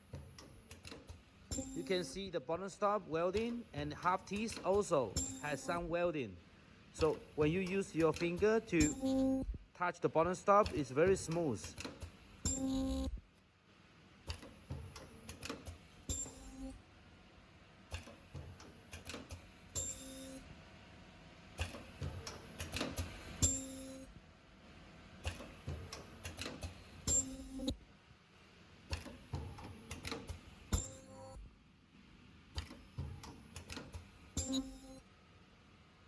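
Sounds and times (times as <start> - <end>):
welding machine buzzing whine: 1.5 - 2.3, 5.2 - 5.9, 8.8 - 9.6, 12.4 - 13.2, 16.1 - 16.8, 19.8 - 20.5, 23.4 - 24.2, 27.1 - 27.8, 30.7 - 31.5, 34.4 - 35.1.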